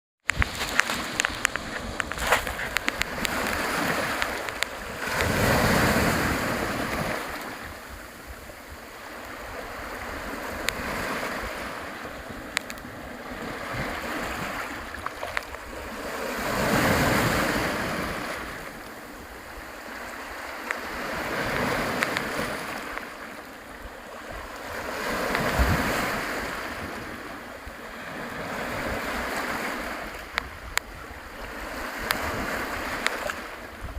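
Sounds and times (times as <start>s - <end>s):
splashing ticks: 0.3s - 5.4s, 12.5s - 12.8s, 15.0s - 15.6s
waves washing in: 0.3s - 33.9s.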